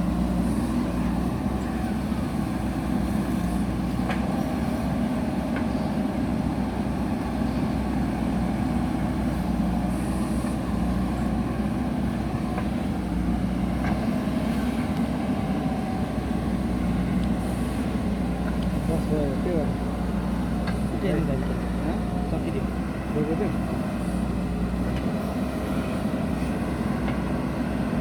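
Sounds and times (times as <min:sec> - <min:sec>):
diesel engine droning: 0:00.0 - 0:28.0.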